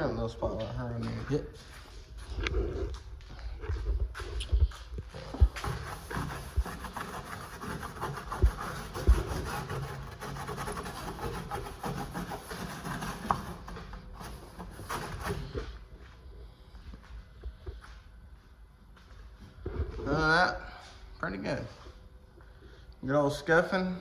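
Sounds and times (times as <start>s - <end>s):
scouring pad scrubbing boat hull: 5.3s - 15.5s.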